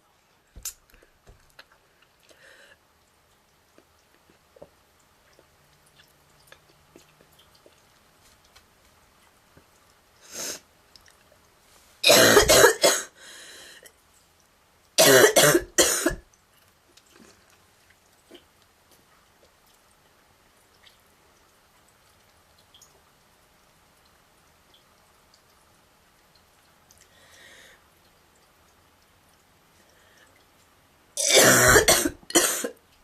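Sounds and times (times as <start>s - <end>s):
girl coughing harshly: 12.0s - 13.2s, 15.0s - 16.2s, 31.2s - 32.8s.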